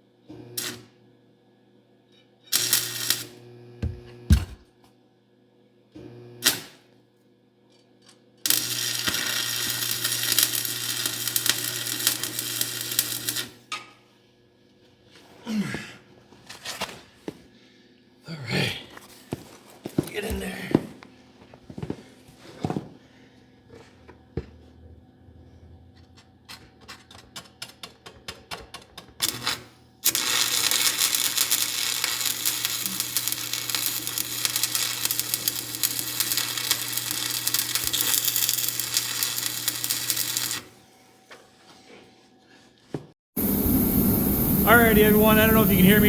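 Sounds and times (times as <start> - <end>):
arc welding crackling hiss: 2.5 - 3.4, 6.4 - 6.8, 8.5 - 13.6, 29.2 - 40.7, 43.4 - 46.0.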